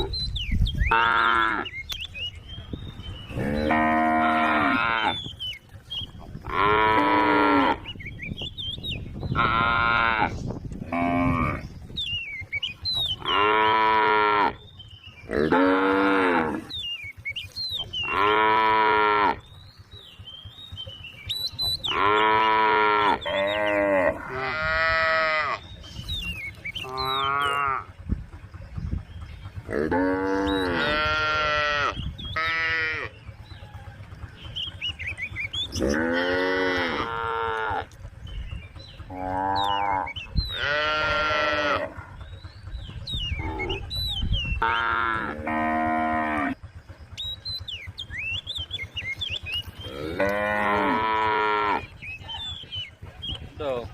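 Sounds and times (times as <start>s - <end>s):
small birds chirping: 0.0s - 53.9s
cattle mooing: 0.9s - 1.7s, 3.3s - 5.4s, 6.4s - 8.0s, 9.3s - 11.7s, 13.0s - 14.7s, 15.3s - 16.8s, 17.8s - 19.5s, 21.7s - 25.7s, 26.8s - 27.9s, 29.6s - 33.2s, 35.7s - 38.0s, 39.0s - 42.3s, 43.3s - 43.9s, 44.6s - 46.6s, 48.9s - 52.4s.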